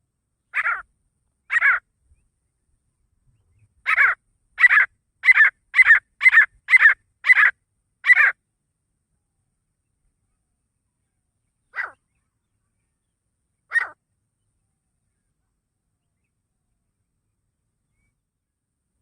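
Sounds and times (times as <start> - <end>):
francolin calling: 0.5 - 1.8, 3.5 - 8.4, 11.6 - 12.9, 13.6 - 14.0.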